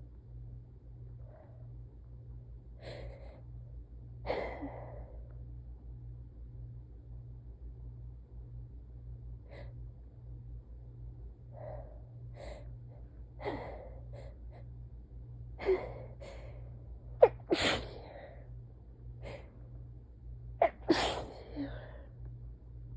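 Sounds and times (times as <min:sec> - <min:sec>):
person sneezing: 0:17.2 - 0:18.1, 0:20.6 - 0:21.9.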